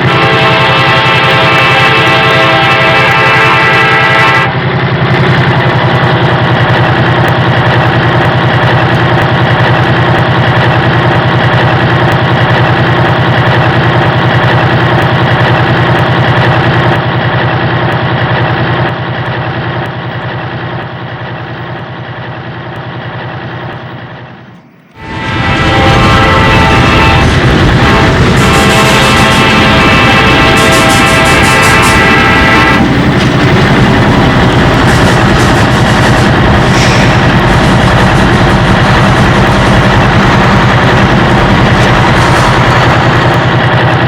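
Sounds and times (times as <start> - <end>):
horn chord: 0.0 - 4.5, 24.9 - 43.5
diesel locomotive rumbling: 0.0 - 44.0.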